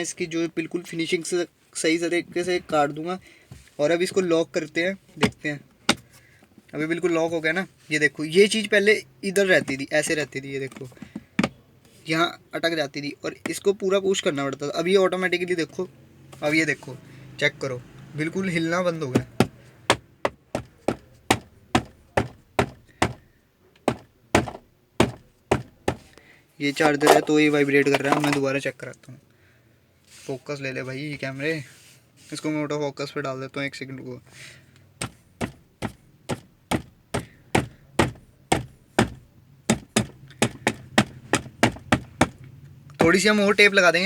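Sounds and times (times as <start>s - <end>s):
knocking on plastic lid: 11.1s - 11.6s, 19.1s - 26.1s, 35.0s - 42.4s.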